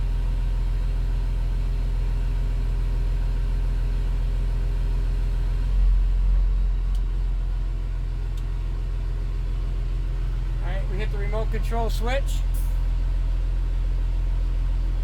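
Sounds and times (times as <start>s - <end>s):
diesel engine idling: 2.8s - 15.0s
deeper engine rumble: 4.9s - 15.0s.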